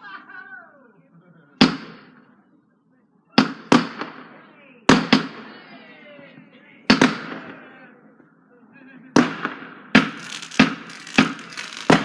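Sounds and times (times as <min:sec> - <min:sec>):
fireworks bangs: 0:10.0 - 0:12.0.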